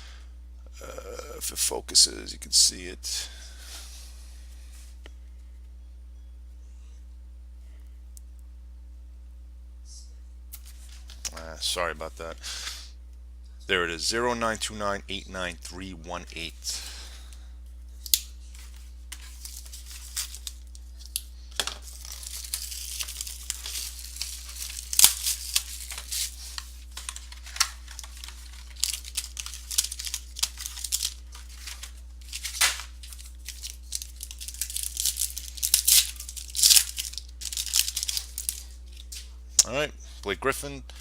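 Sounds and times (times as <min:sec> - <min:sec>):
faint electrical hum: 0:00.0 - 0:41.0
wrappers tearing and crinkling: 0:18.0 - 0:39.3
cardboard and cards clicking: 0:18.1 - 0:39.2.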